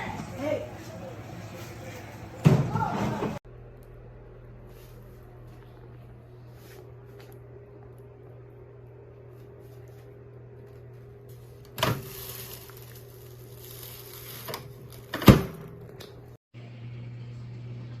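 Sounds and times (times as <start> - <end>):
microwave oven humming: 0.0 - 18.0.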